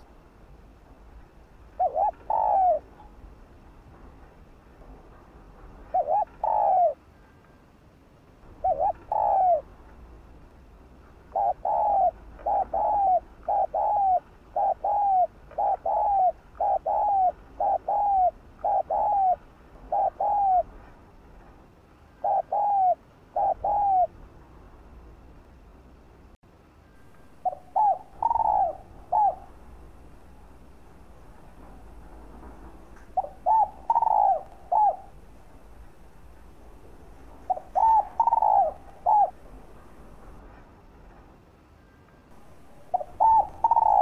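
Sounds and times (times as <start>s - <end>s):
dove cooing: 1.7s - 2.9s, 5.9s - 7.0s, 8.6s - 9.7s, 11.3s - 20.7s, 22.2s - 24.2s, 27.4s - 40.4s, 42.4s - 44.0s.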